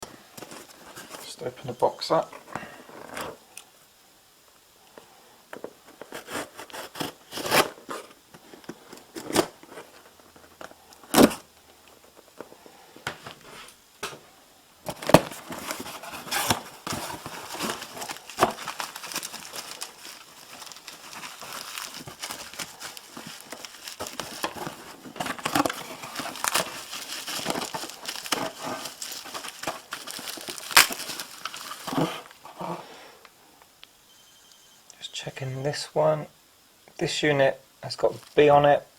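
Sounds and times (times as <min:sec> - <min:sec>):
plastic and cardboard crinkling: 0:00.0 - 0:03.4, 0:05.5 - 0:14.2, 0:14.8 - 0:32.5.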